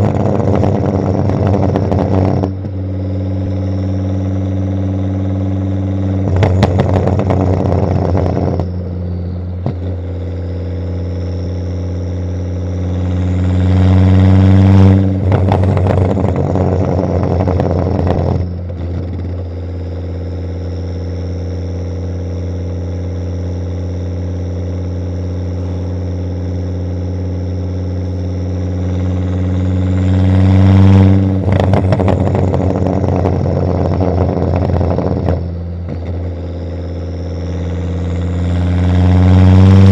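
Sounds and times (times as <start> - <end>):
exhaust crackling pops and bangs: 0.0 - 2.8, 5.8 - 8.8, 9.6 - 10.4, 14.6 - 19.6, 28.9 - 36.4
car engine revving: 0.0 - 39.9.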